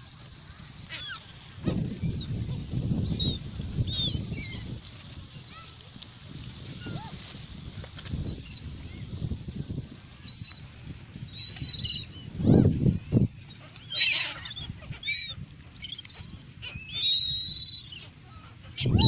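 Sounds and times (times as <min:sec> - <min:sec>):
gulls calling: 0:00.0 - 0:05.8, 0:10.1 - 0:19.0.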